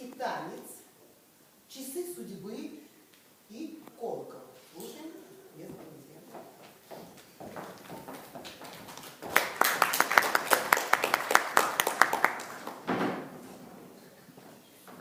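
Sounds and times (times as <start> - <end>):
small audience clapping: 7.1 - 13.3.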